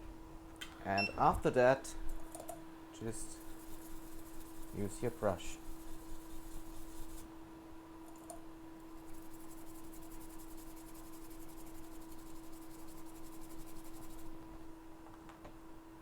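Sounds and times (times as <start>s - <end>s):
electrical hum: 0.0s - 16.0s
brush scrubbing circuit board: 3.0s - 7.3s, 8.9s - 14.4s.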